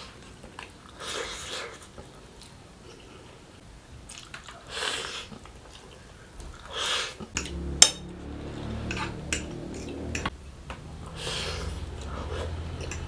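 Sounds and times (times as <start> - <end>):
slurping noodles: 4.1 - 7.6, 11.0 - 13.0.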